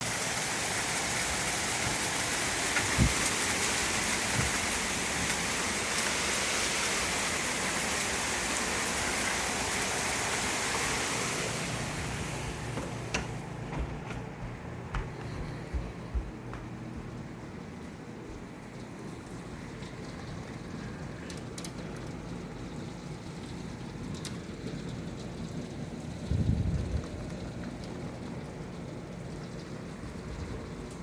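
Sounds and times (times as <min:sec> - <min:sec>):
heavy rain pouring: 0:00.0 - 0:13.2.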